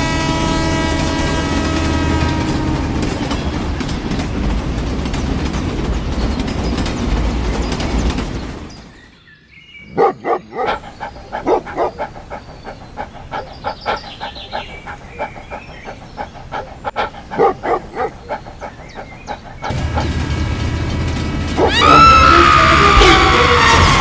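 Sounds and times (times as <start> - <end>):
dog barking: 9.9 - 20.2, 21.6 - 24.0.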